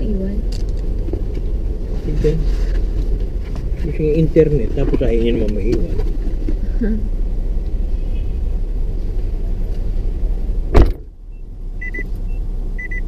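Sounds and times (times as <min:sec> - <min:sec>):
low rumble: 0:00.0 - 0:13.0
car door shutting: 0:10.7 - 0:11.1
short high beeps: 0:11.3 - 0:13.0.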